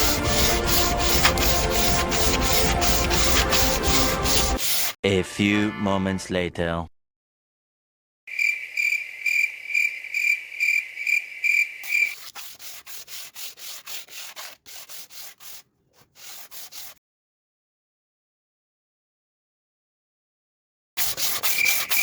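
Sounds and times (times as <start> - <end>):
sandpaper rubbing on wood: 0.0 - 5.0, 11.8 - 17.0, 21.0 - 22.0.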